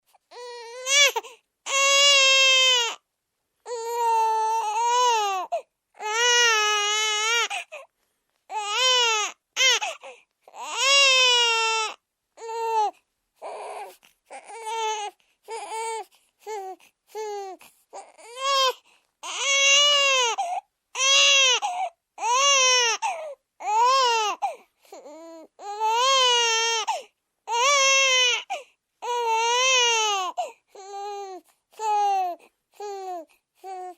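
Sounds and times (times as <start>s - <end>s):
infant crying: 0.2s - 3.0s, 3.6s - 7.9s, 8.5s - 33.9s.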